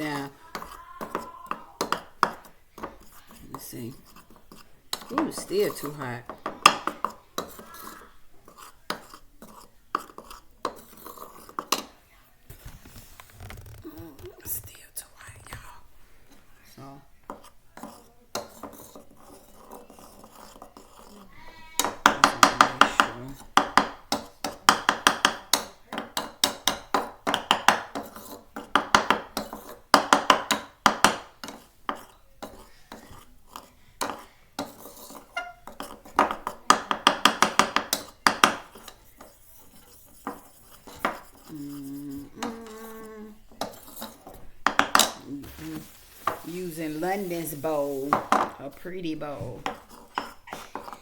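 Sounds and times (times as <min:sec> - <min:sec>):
spoon scraping against a bowl: 0:00.0 - 0:12.0, 0:16.1 - 0:51.0.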